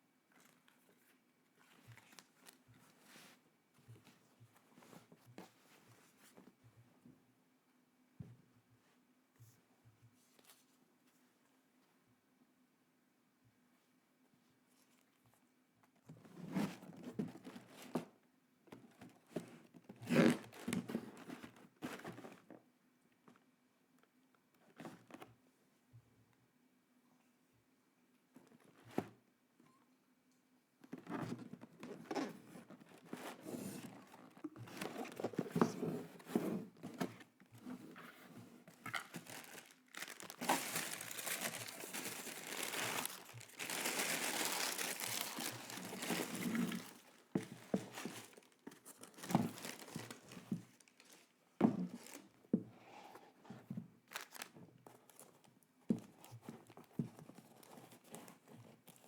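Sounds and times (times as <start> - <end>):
packaging crinkling and rustling: 38.0 - 52.4, 54.1 - 55.3.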